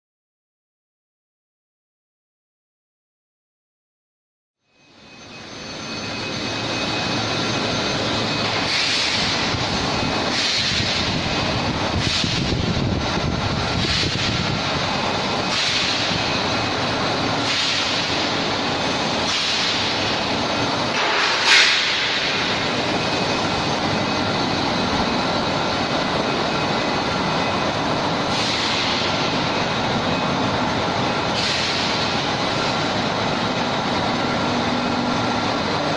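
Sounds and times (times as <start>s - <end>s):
high whining tones: 4.6s - 35.9s
steady machinery noise: 4.7s - 35.9s.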